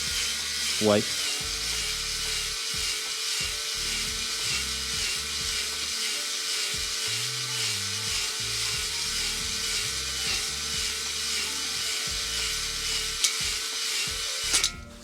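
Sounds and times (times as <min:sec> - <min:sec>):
drill motor whine: 0:00.0 - 0:15.0
hone grinding against metal: 0:00.0 - 0:15.0.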